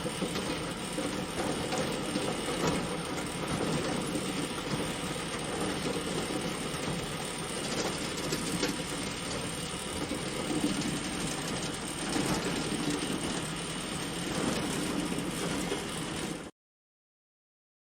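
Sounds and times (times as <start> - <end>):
hay bale elevator clattering: 0.1 - 16.0.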